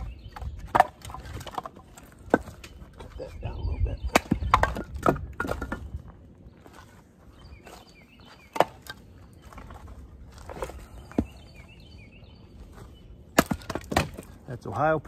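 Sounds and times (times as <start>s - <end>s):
firewood knocks: 0.3s - 2.8s, 4.1s - 6.0s, 13.4s - 14.4s.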